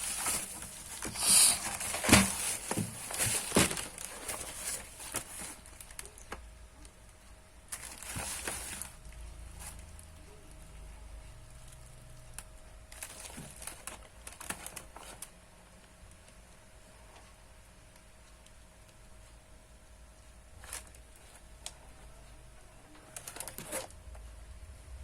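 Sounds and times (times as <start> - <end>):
packaging crinkling and rustling: 0.0 - 6.4, 7.7 - 10.2, 12.4 - 15.3, 20.6 - 21.5, 23.1 - 23.9
faint steady hum: 0.0 - 25.0.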